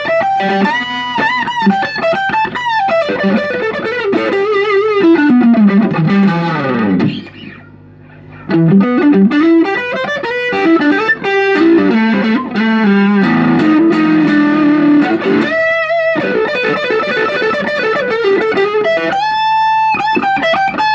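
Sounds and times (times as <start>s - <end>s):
electric guitar lead line: 0.0s - 20.9s.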